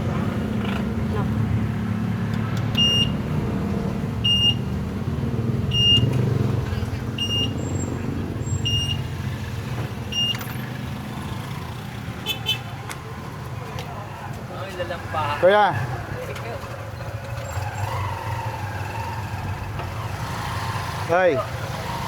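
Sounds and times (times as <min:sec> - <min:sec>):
road traffic: 0:00.0 - 0:22.0
short electronic beeps: 0:02.7 - 0:03.2, 0:04.2 - 0:04.6, 0:05.7 - 0:06.1, 0:07.2 - 0:09.1, 0:10.1 - 0:10.5.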